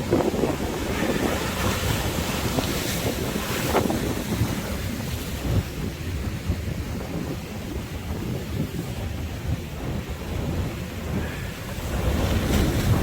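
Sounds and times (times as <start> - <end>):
sea waves washing on shore: 0.0 - 13.0
wind buffeting microphone: 0.0 - 13.0.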